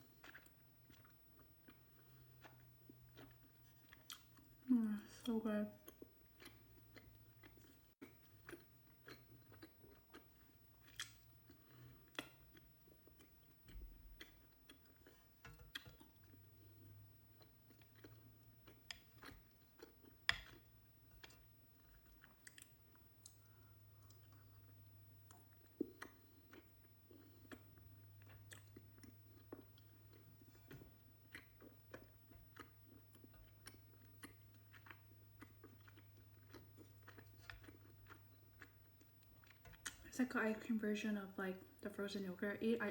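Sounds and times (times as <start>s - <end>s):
close-up chewing with mouth clicks: 0.0s - 40.1s.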